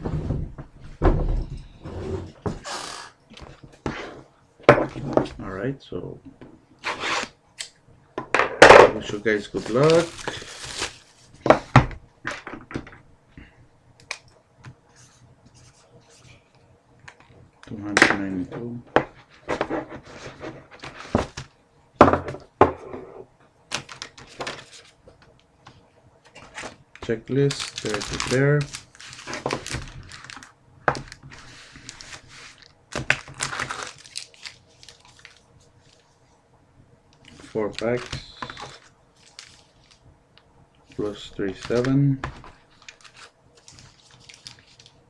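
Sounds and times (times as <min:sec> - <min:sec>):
wrappers crinkling: 0:09.2 - 0:11.4, 0:26.5 - 0:36.2, 0:37.2 - 0:40.0, 0:40.9 - 0:45.0.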